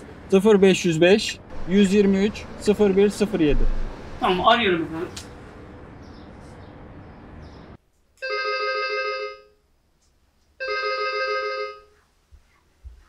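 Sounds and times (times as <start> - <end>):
intercom electronic ring tone: 8.2 - 9.6, 10.6 - 12.0.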